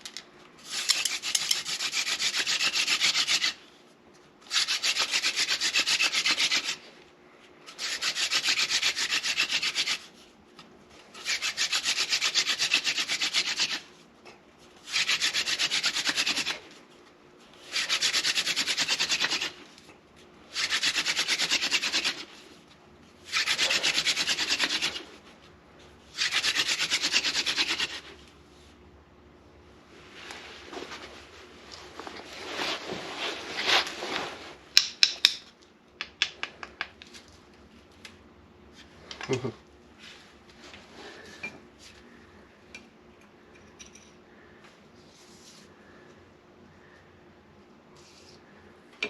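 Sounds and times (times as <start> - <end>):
hand drill spindle grinding wood: 0.6 - 3.6.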